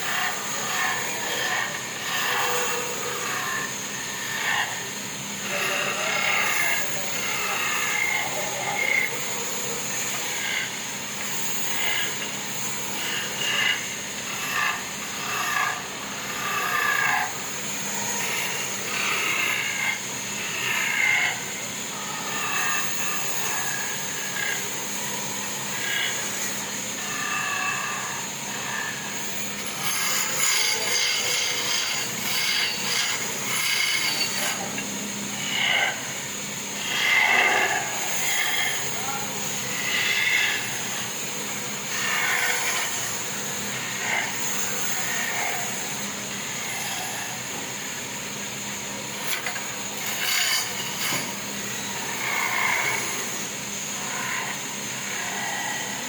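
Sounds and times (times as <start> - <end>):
sawmill machine whine: 0.0 - 56.0
squeals and scrapes of wood: 49.3 - 51.4.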